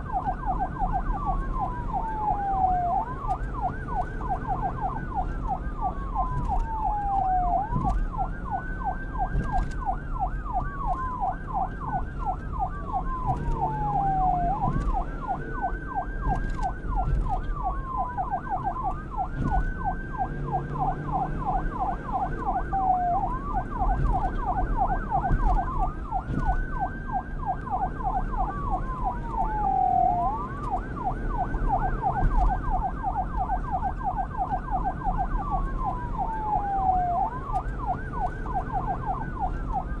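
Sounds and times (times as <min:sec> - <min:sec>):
police siren wailing and yelping: 0:00.0 - 0:40.0.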